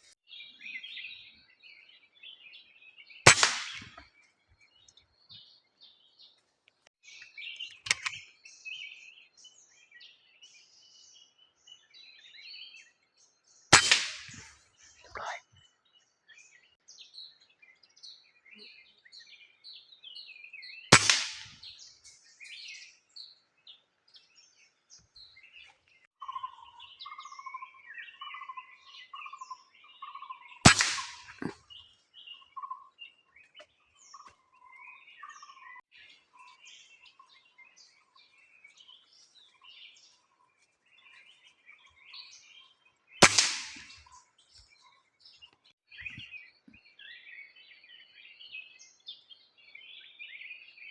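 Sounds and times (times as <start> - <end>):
birds chirping: 0.0 - 6.4, 7.0 - 50.9
air rifle shot crack: 3.3 - 4.0, 7.9 - 8.2, 13.7 - 14.5, 20.9 - 21.6, 30.6 - 31.6, 43.2 - 44.1.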